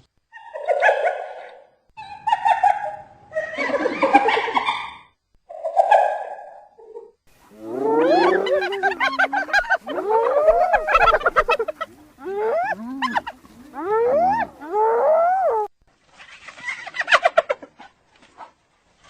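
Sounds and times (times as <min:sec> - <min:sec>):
hyena calls: 0:07.4 - 0:15.7.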